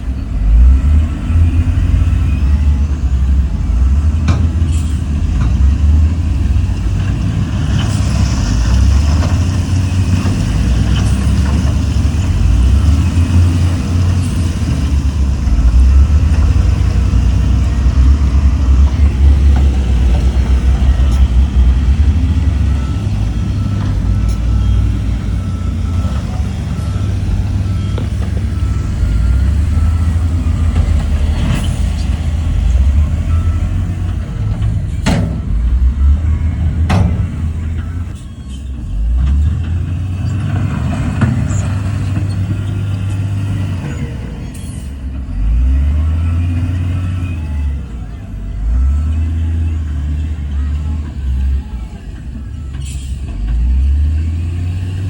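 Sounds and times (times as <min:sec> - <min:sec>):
diesel engine rumbling: 0:00.0 - 0:55.0
brief clanks: 0:04.2 - 0:05.6.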